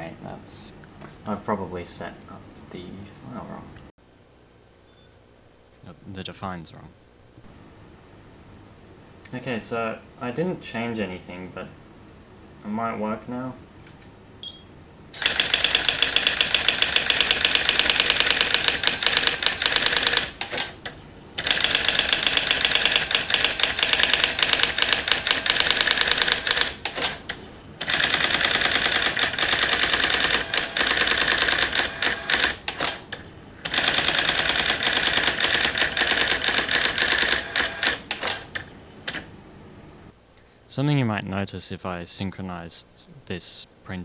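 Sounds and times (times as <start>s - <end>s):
typewriter character strikes: 15.2s - 20.8s, 21.4s - 27.2s.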